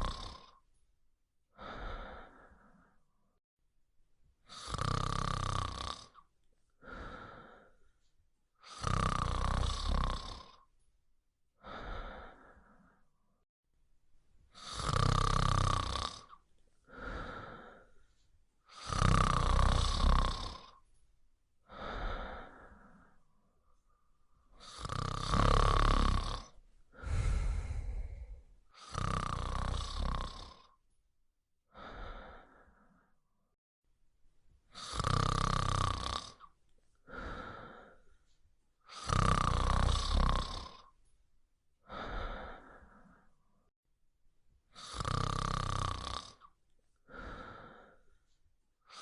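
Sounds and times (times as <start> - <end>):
dog snoring: 0.0 - 0.6, 4.5 - 6.2, 8.6 - 10.7, 14.6 - 17.6, 18.7 - 20.8, 24.6 - 30.8, 34.7 - 36.5, 38.9 - 40.9, 44.8 - 46.5.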